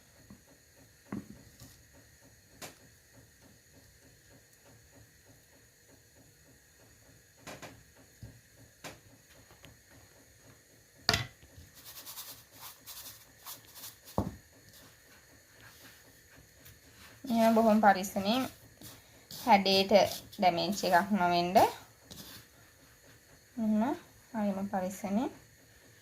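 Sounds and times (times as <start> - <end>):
knock: 14.2 - 14.4
dry scratchy rustling: 16.6 - 22.9.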